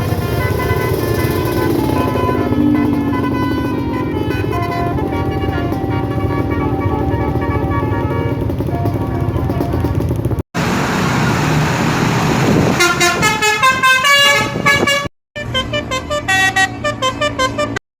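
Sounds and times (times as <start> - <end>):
rushing noise: 0.0 - 9.1, 10.2 - 14.7
bus horn playing a tune: 0.0 - 10.3, 12.8 - 17.8.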